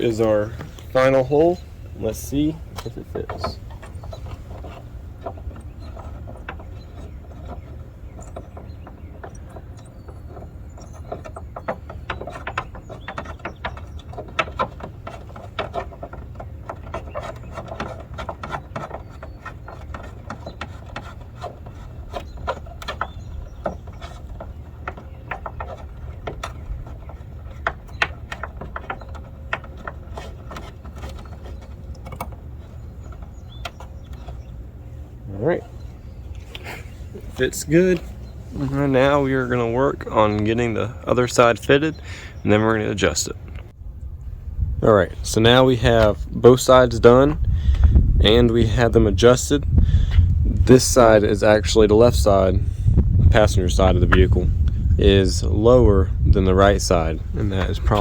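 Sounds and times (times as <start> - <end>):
metal clicks and rattles: 0.0 - 35.0
steady low hum: 0.0 - 58.0.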